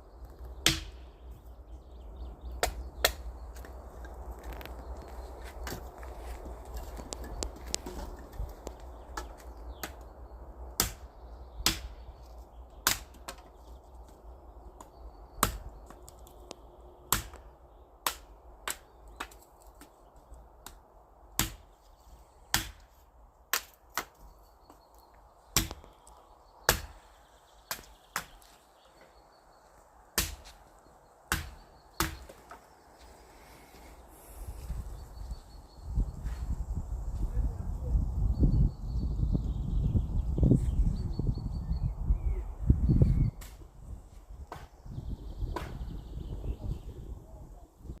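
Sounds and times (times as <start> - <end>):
firewood being chopped: 0.4 - 1.1, 2.5 - 10.1, 10.8 - 14.2, 14.8 - 16.5, 17.1 - 20.0, 21.4 - 21.8, 22.5 - 24.8, 25.5 - 28.6, 30.1 - 30.7, 31.3 - 32.7, 43.4 - 43.6, 44.4 - 44.8, 45.5 - 45.9.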